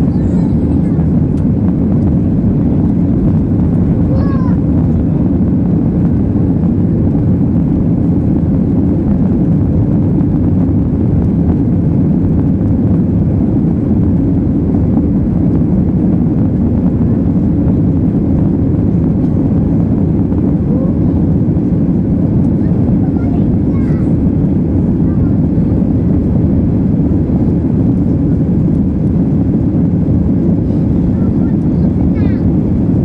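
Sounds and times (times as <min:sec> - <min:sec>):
jet engines roaring in cabin: 0:00.0 - 0:33.0.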